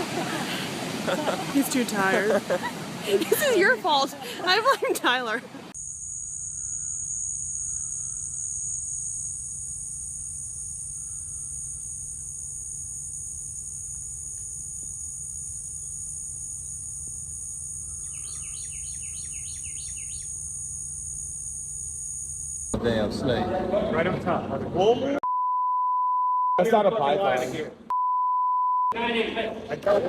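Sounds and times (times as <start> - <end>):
crickets trilling: 5.8 - 22.8.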